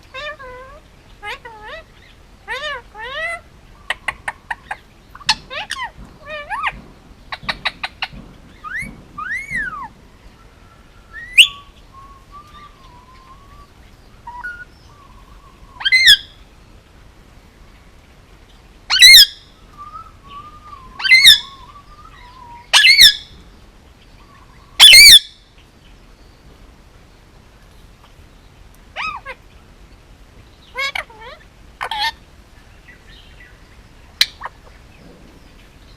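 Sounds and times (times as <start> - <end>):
parakeet harsh squawks: 2.5 - 6.8, 18.9 - 19.4, 22.7 - 23.2, 24.8 - 25.3, 29.0 - 29.4, 30.7 - 32.2
parakeet chirps: 14.2 - 16.3, 18.9 - 19.4, 21.0 - 23.4, 24.5 - 25.4, 29.0 - 29.4, 30.7 - 32.2.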